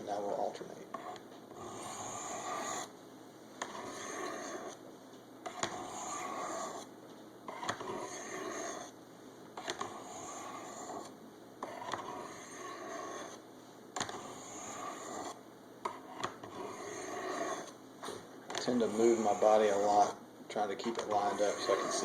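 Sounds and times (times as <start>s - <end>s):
knife scraping on ceramic rod: 0.9s - 2.9s, 3.6s - 4.8s, 5.5s - 6.9s, 7.5s - 9.0s, 9.6s - 13.4s, 14.0s - 20.2s, 20.8s - 22.0s.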